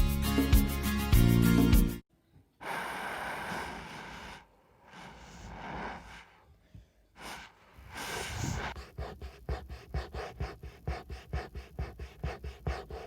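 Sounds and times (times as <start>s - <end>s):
person panting into microphone: 2.6s - 13.0s.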